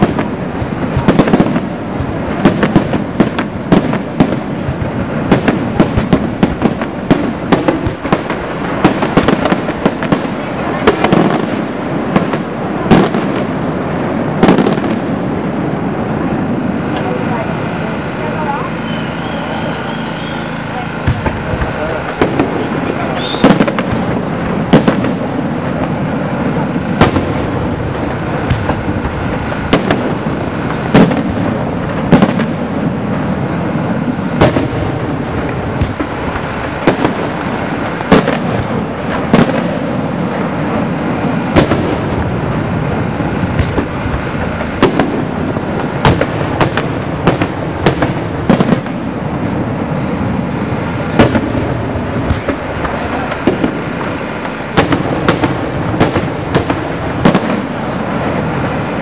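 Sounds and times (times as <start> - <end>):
fireworks din: 0.0 - 59.0
firework shell bursts: 16.2 - 59.0.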